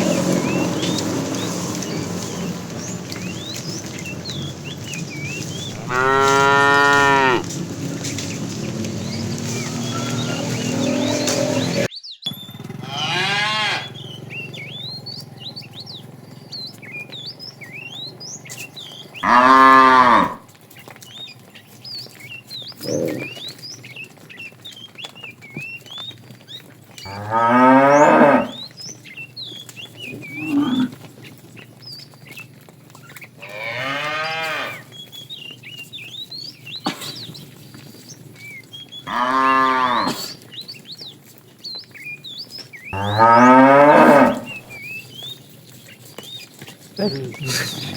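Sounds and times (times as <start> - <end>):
cows mooing: 0.0 - 11.9, 12.6 - 21.0, 22.7 - 23.5, 27.1 - 28.8, 29.6 - 31.2, 33.4 - 35.0, 39.0 - 40.5, 42.9 - 44.8.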